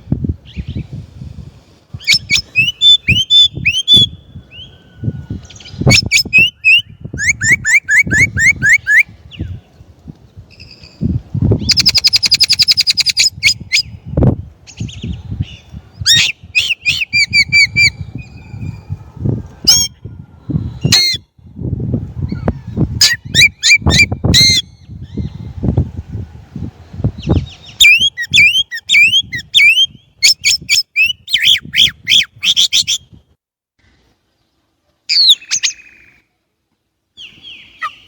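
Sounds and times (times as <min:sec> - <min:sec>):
blackbird singing: 0:02.0 - 0:09.6, 0:11.6 - 0:14.0, 0:35.1 - 0:36.2, 0:37.2 - 0:38.0.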